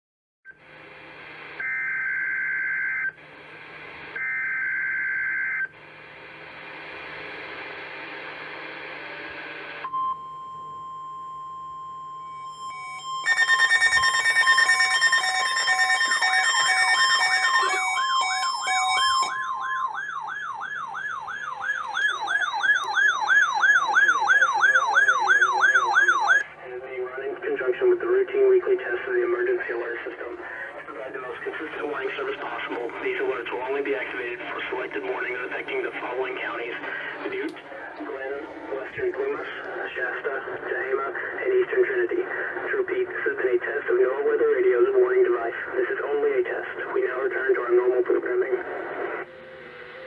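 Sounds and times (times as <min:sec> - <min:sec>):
sweeping siren-like alarm tone: 0:10.2 - 0:26.4, 0:49.2 - 0:50.0
digital header tones: 0:12.0 - 0:20.0
loud blare of steady tones: 0:12.2 - 0:26.5
radio hiss: 0:24.0 - 0:50.0.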